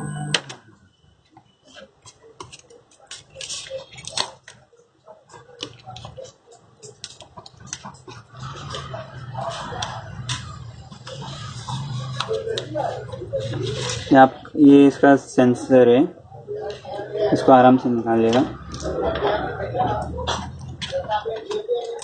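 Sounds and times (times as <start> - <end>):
low hum: 0.0 - 0.6
plastic cards clicking and scraping: 1.7 - 4.6, 5.3 - 12.9.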